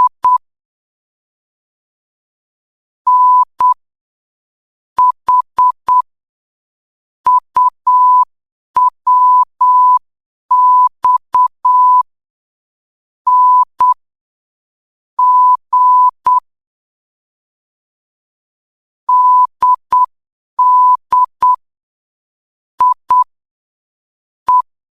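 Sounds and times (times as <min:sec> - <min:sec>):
morse code beeps: 0:00.0 - 0:00.4, 0:03.1 - 0:03.8, 0:05.0 - 0:06.0, 0:07.3 - 0:10.0, 0:10.6 - 0:12.1, 0:15.2 - 0:16.4, 0:19.1 - 0:21.6, 0:22.8 - 0:23.3.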